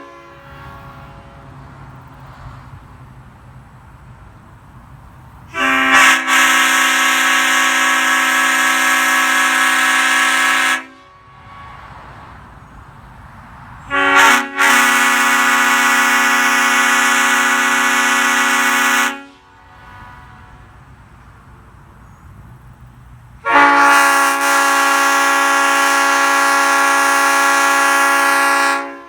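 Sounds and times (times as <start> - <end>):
air horn chord blasts: 0.0 - 1.6, 5.5 - 12.0, 13.9 - 20.8, 23.4 - 29.0.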